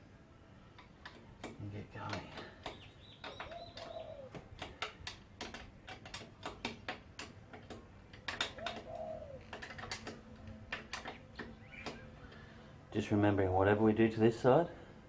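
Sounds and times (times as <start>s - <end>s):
dove cooing: 3.2s - 4.7s, 8.3s - 10.2s.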